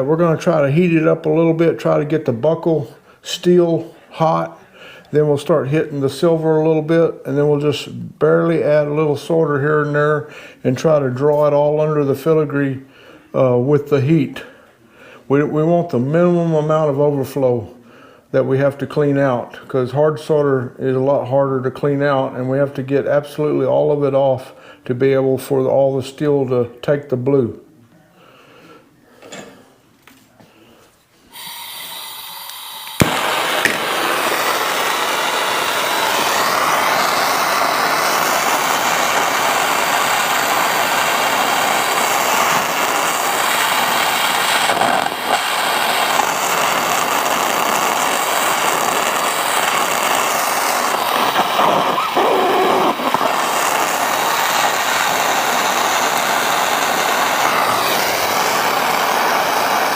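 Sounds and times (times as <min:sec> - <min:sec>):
gas hissing: 0:00.0 - 0:13.2, 0:31.3 - 0:59.9
torch flame rushing: 0:31.4 - 0:59.9
torch lighting with a pop: 0:31.4 - 0:59.9.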